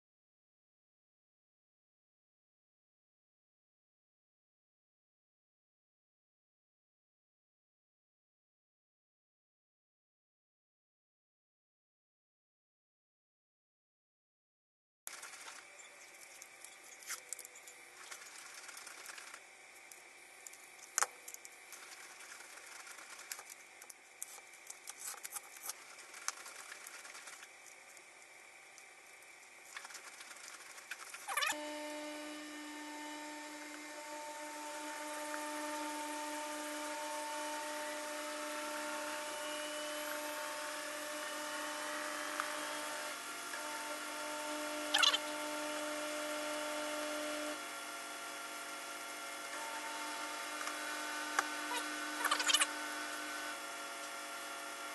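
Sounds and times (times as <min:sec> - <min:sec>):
power tool motor running: 0:15.1 - 0:54.9.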